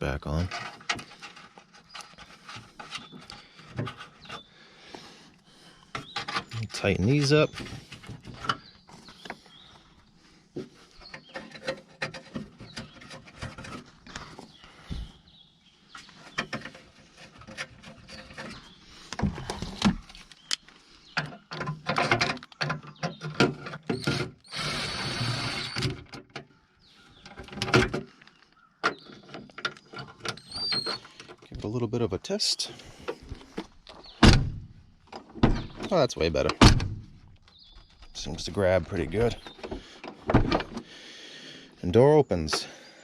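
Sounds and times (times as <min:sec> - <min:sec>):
impact driver bursts: 0:24.0 - 0:26.0.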